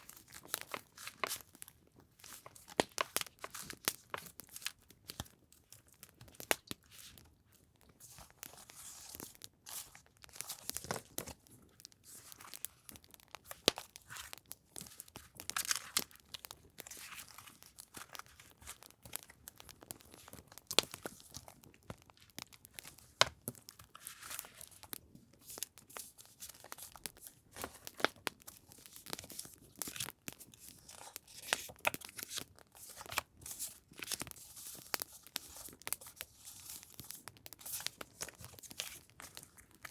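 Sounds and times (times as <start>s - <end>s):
paper rustling and tearing: 29.2s - 39.5s.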